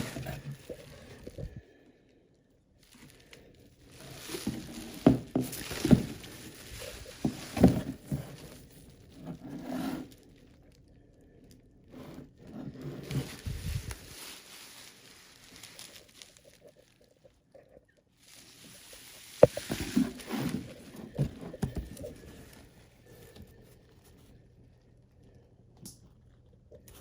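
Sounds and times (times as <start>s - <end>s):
packaging rustling and scraping: 0.0s - 1.6s, 2.8s - 10.6s, 11.9s - 17.3s, 18.2s - 24.3s.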